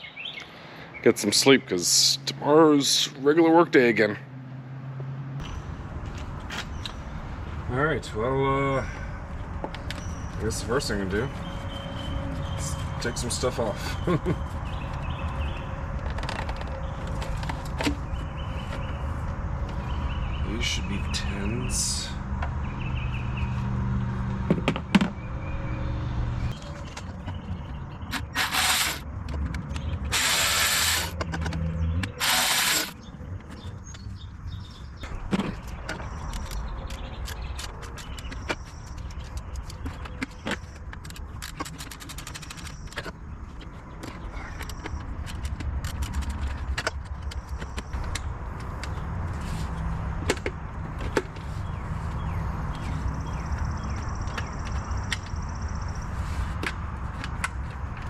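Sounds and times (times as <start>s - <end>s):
hand tools and metal parts clinking: 28.1s - 33.8s, 35.0s - 49.0s.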